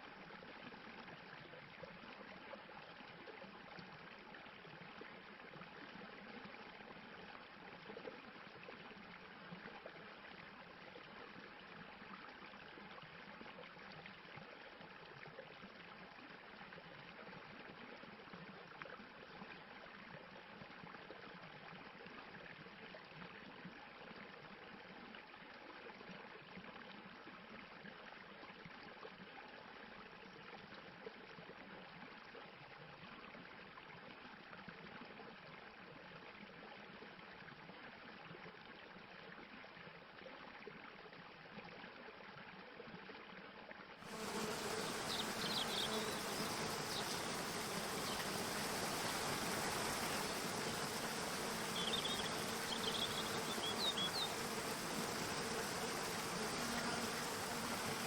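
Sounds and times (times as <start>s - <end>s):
stream rushing over rocks: 44.3s - 56.6s.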